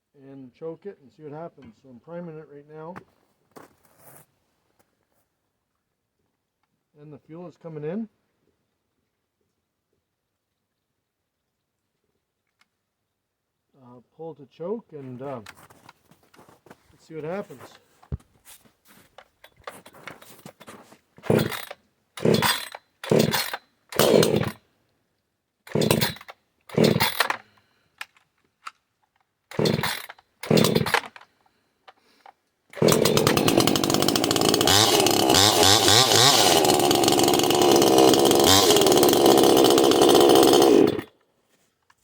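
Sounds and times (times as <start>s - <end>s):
chainsaw starter cord pulls: 17.2s - 17.8s, 19.2s - 24.6s, 25.7s - 28.3s, 29.5s - 41.2s
chainsaw engine running: 19.7s - 24.6s, 25.7s - 27.4s, 29.5s - 31.1s, 32.7s - 41.1s.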